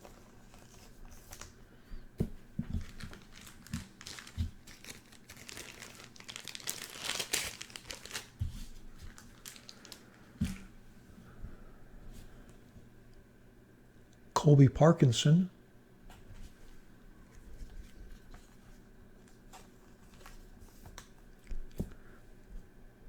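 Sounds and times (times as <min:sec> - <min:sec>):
cards and plastic crinkling: 0:00.0 - 0:01.6, 0:02.6 - 0:10.7, 0:17.6 - 0:21.9.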